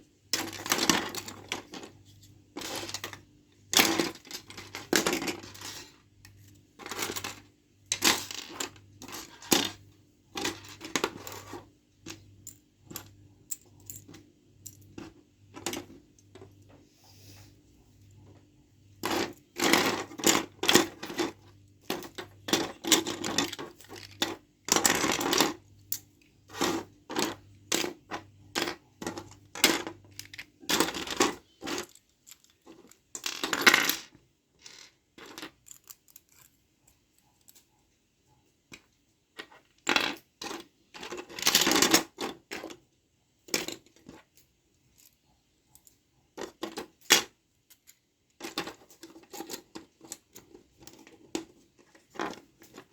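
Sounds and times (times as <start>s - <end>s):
toy gun parts clicking and clattering: 19.0s - 36.6s.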